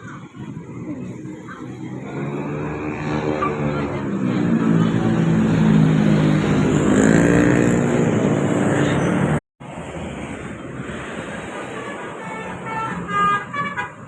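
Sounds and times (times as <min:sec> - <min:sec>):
multi-tone bus horn tune: 0:11.7 - 0:14.0.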